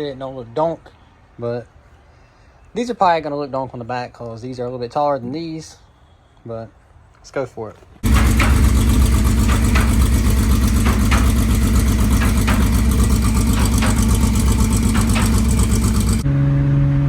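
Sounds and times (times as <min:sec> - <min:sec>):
car engine idling roughly: 0:08.0 - 0:16.2.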